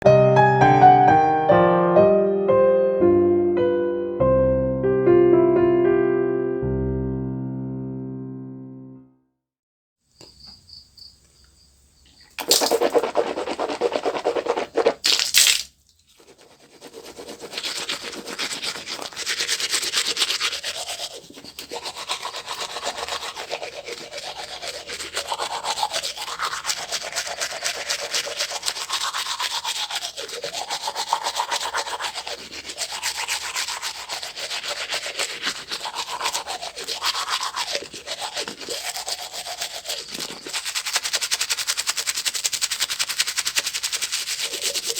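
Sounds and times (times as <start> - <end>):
toothbrush scrubbing teeth: 12.4 - 44.9.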